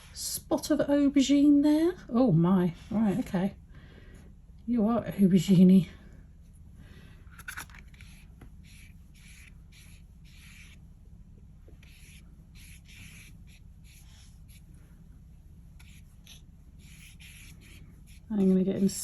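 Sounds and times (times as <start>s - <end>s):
steady low hum: 0.0s - 19.0s
paintbrush swishing on paper: 8.0s - 10.9s, 11.7s - 19.0s.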